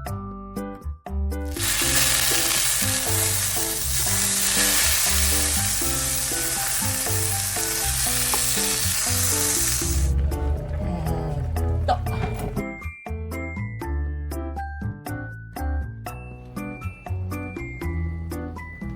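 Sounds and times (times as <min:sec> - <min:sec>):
background music: 0:00.0 - 0:18.9
food sizzling in a frying pan: 0:01.5 - 0:10.2.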